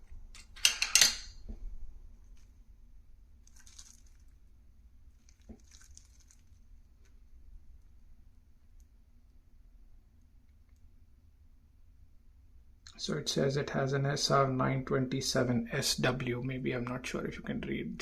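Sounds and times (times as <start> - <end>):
rustling: 3.4 - 8.0.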